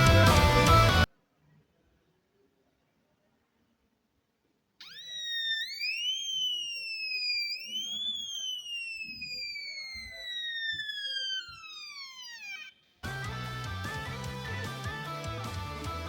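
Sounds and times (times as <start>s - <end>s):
guitar music: 0.0s - 1.0s
electronic siren sweeping: 4.8s - 13.2s.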